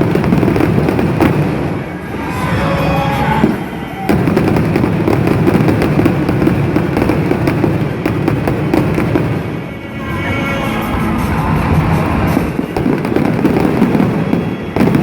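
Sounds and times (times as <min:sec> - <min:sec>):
fireworks crackling and bursting: 0:00.0 - 0:15.0
low rumble: 0:10.0 - 0:12.6.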